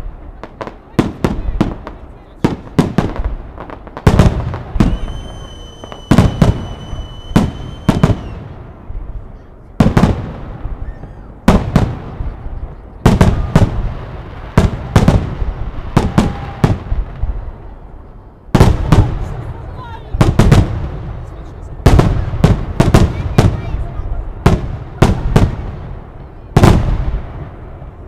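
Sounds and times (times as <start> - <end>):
fireworks bangs with rumbling echo: 0.0 - 28.0
high whistle: 4.8 - 8.4.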